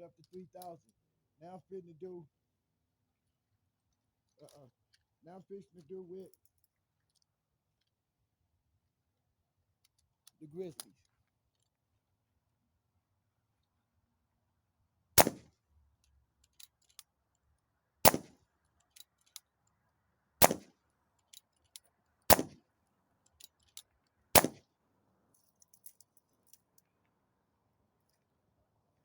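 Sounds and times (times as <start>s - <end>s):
air rifle shots: 15.2s - 15.4s, 18.0s - 18.3s, 20.4s - 20.7s, 22.3s - 22.6s, 24.4s - 24.6s.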